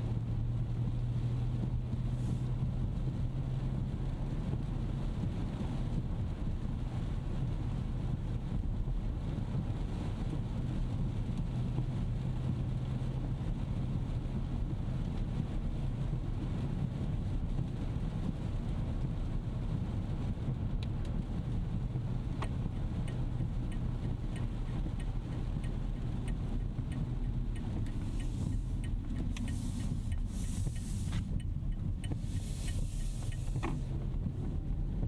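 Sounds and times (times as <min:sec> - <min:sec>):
car cabin road and engine hum: 0:00.0 - 0:35.0
indicator ticking: 0:22.4 - 0:33.8.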